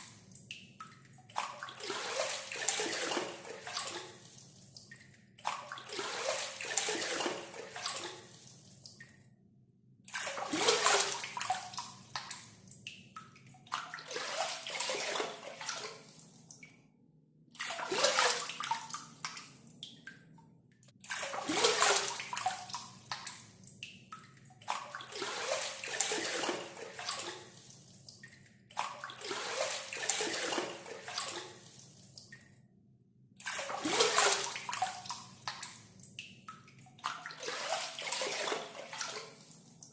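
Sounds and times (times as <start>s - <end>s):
water pouring and splashing: 1.3s - 9.0s, 10.1s - 12.4s, 13.7s - 16.6s, 17.6s - 20.1s, 21.0s - 23.4s, 24.7s - 28.0s, 28.8s - 31.8s, 33.4s - 35.8s, 37.0s - 39.9s.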